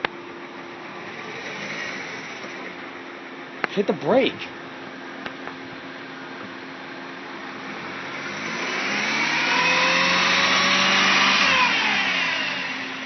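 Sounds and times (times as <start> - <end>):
car engine revving: 7.4 - 13.0.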